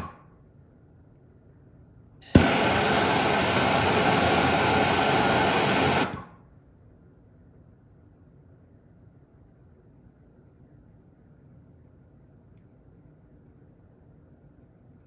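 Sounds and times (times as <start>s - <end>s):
torch flame hissing: 2.2s - 6.3s
torch igniter click: 2.2s - 6.4s.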